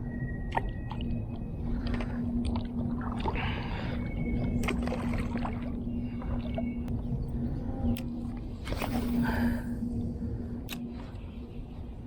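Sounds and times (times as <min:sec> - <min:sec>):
low rumble: 0:00.0 - 0:12.0
steady low hum: 0:00.0 - 0:12.0
water sloshing and splashing: 0:00.5 - 0:06.9.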